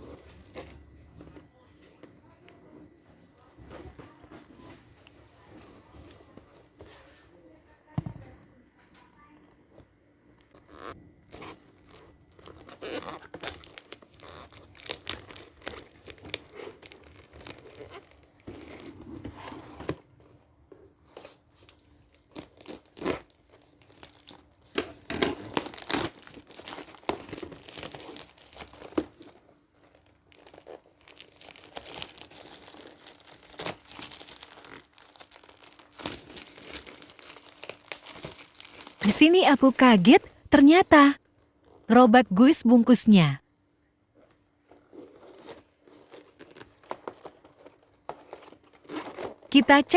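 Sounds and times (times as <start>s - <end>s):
packaging tearing and crinkling: 10.6s - 20.0s, 21.0s - 39.8s, 44.7s - 49.6s.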